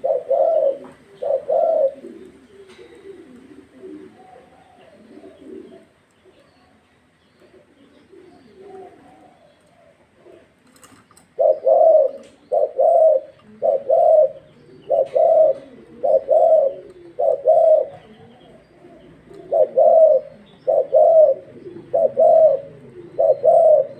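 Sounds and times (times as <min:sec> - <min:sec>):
dove cooing: 0:00.0 - 0:06.8, 0:07.4 - 0:23.9.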